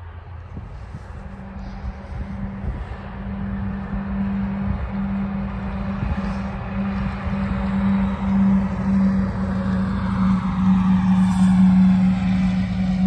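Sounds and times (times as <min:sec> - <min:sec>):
wind buffeting microphone: 0:00.0 - 0:13.0
harsh electronic siren: 0:03.5 - 0:13.0.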